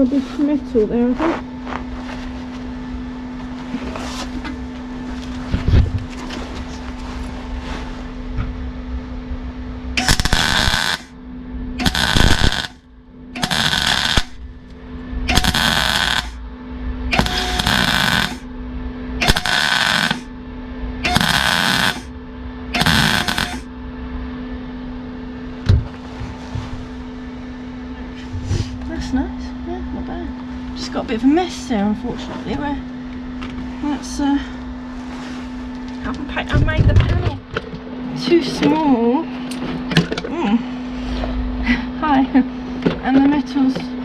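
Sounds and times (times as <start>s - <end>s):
welder hum: 9.9s - 18.5s, 19.1s - 20.4s, 21.0s - 23.7s
welder crackling: 10.0s - 11.1s, 11.8s - 12.8s, 13.4s - 14.4s, 15.3s - 16.4s, 17.1s - 18.4s, 19.2s - 20.3s, 21.0s - 22.1s, 22.8s - 23.7s.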